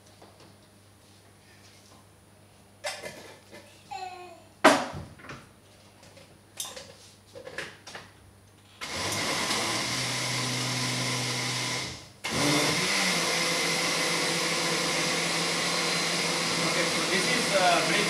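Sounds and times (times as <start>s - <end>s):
electric blender motor: 8.8s - 18.0s.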